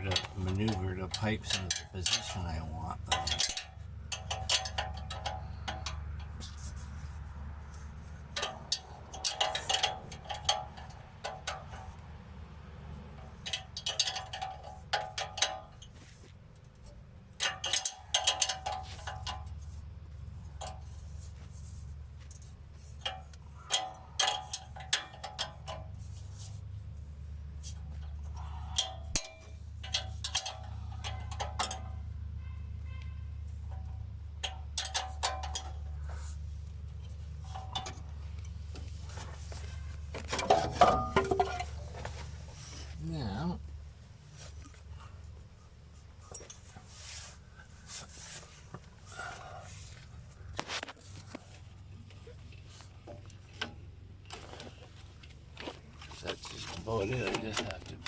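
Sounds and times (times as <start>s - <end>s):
engine idling: 0.0s - 12.0s, 12.8s - 58.0s
metallic clinking: 27.7s - 36.2s.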